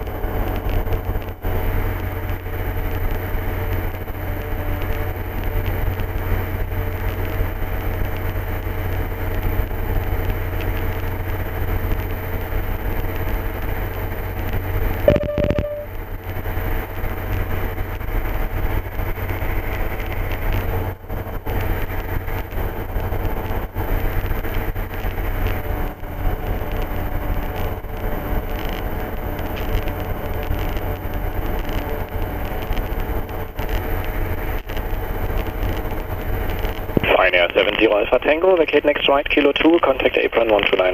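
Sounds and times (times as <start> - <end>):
aircraft engine and propeller drone: 0.0 - 15.1, 15.9 - 40.9
short tone with click: 15.0 - 16.0.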